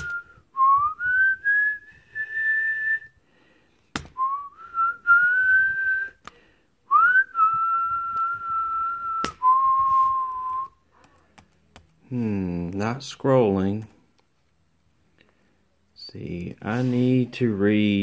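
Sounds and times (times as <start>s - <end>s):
person whistling a slow tune: 0.0s - 3.2s, 4.2s - 6.2s, 6.9s - 10.8s.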